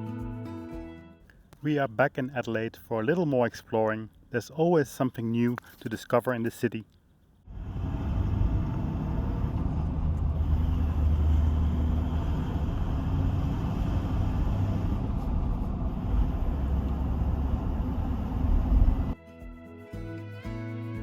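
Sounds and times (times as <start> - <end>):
vehicle engine and road rumble: 6.8 - 19.2.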